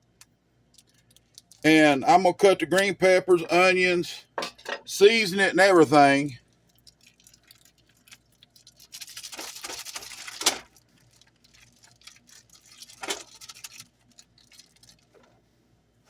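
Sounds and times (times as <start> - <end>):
packaging crinkling: 0.7 - 1.6, 6.5 - 15.3.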